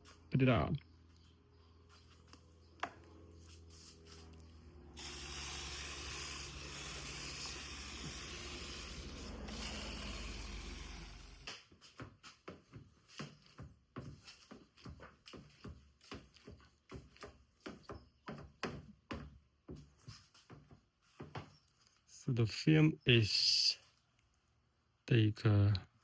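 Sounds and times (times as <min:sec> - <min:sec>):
sprayer hissing: 0:05.0 - 0:11.5.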